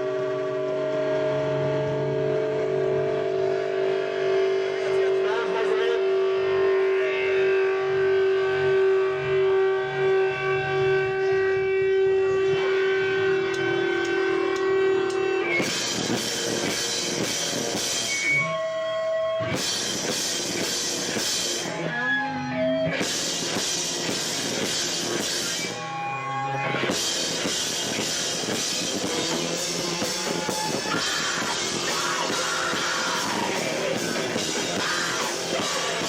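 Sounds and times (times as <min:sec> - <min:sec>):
distorted live rock band: 0:00.0 - 0:36.0
ringing guitar notes: 0:00.0 - 0:36.0.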